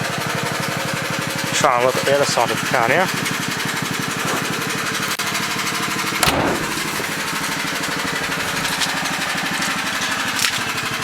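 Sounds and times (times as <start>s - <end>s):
engine running: 0.0s - 11.0s
sharp knock: 6.2s - 7.3s.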